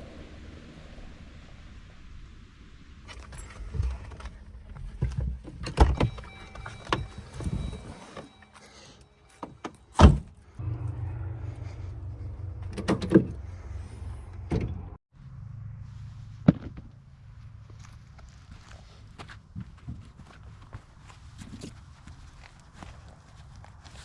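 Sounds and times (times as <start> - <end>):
low vehicle rumble: 0.0 - 18.7.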